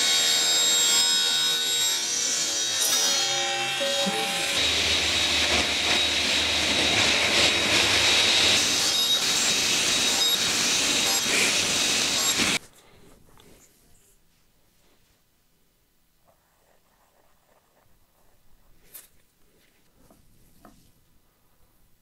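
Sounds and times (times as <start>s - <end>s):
woodworking power tool running: 0.0s - 12.6s.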